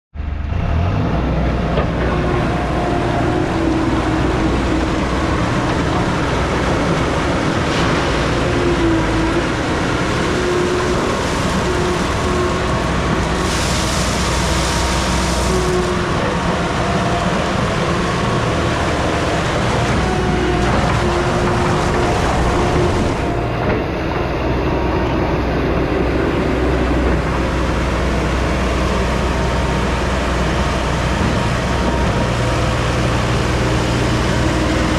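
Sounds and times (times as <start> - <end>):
diesel engine running: 0.1 - 34.9
hydraulic whine shifting in pitch: 0.2 - 34.9
hiss: 13.3 - 16.0.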